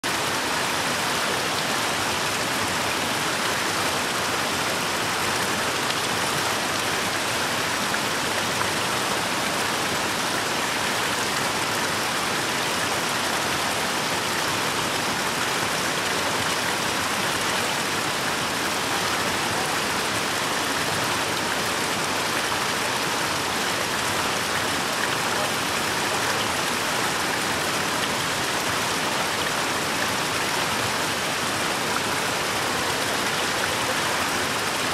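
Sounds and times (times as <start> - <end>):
fountain water splashing: 0.1 - 34.9.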